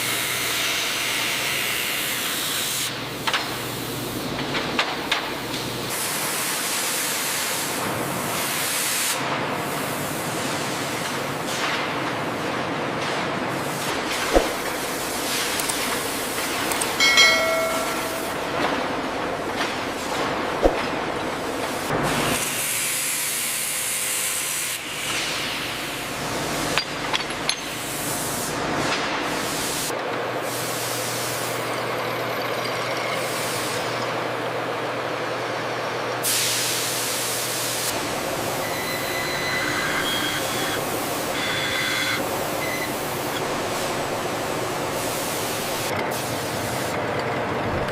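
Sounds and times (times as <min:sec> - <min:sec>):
factory machinery hissing: 0:05.4 - 0:26.8, 0:36.2 - 0:47.1.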